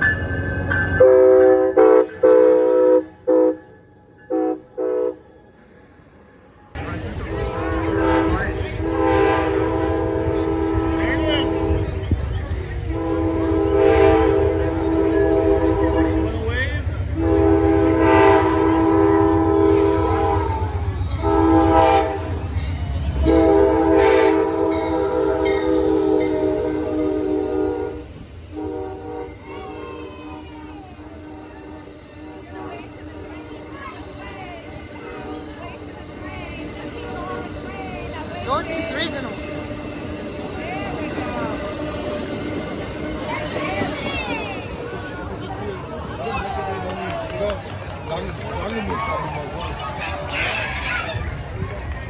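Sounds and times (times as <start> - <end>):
train rumbling: 0.0 - 52.0
locomotive air horn blasts: 0.9 - 5.3, 7.3 - 12.1, 12.9 - 16.4, 17.0 - 22.6, 23.2 - 33.7, 35.0 - 35.9.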